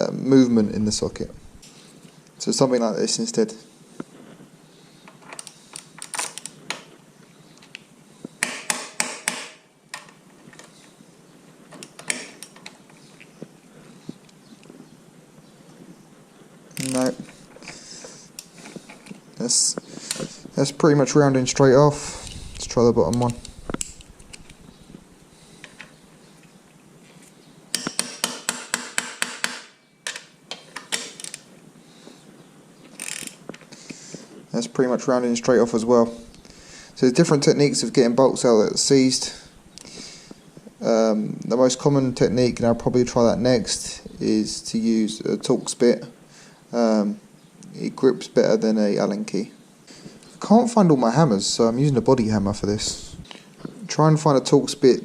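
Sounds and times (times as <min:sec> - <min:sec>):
hammer tapping metal: 0:27.7 - 0:29.7.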